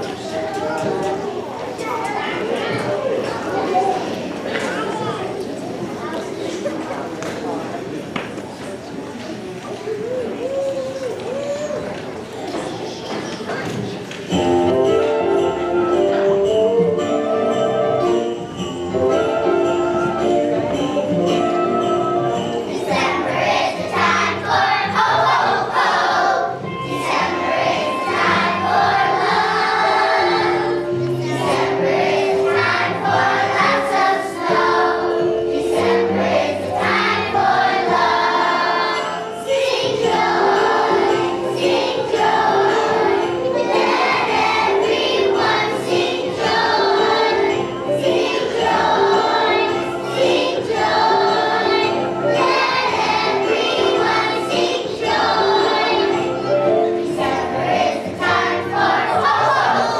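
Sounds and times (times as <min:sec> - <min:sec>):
children's choir singing: 0:00.0 - 0:08.0, 0:10.9 - 0:59.9
instrumental accompaniment: 0:14.2 - 0:59.9.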